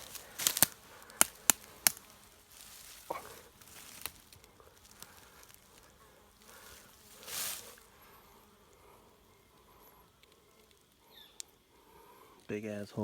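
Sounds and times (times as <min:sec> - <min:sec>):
short rustle: 0:00.0 - 0:07.9
outdoor ambience: 0:00.0 - 0:13.0.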